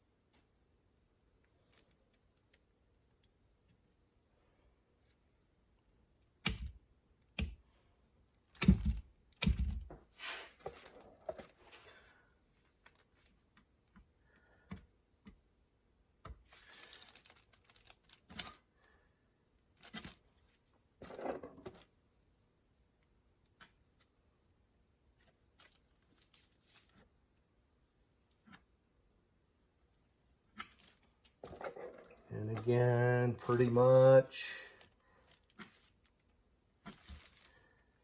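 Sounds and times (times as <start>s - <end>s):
rustling and scraping: 9.9s - 13.4s, 16.4s - 18.7s, 19.8s - 22.0s, 25.2s - 27.2s, 30.5s - 32.7s, 34.7s - 37.9s.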